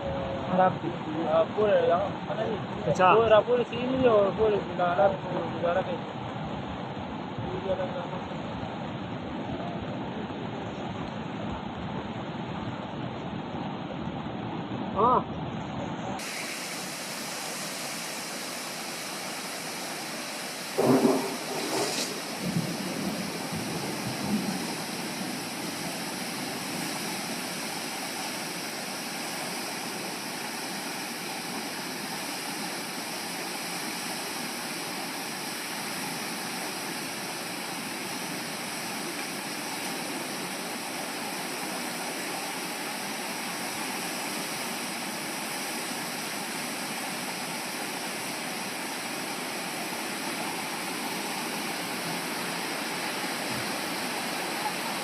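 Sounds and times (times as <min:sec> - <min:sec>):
floodwater rushing: 0:16.2 - 0:55.0.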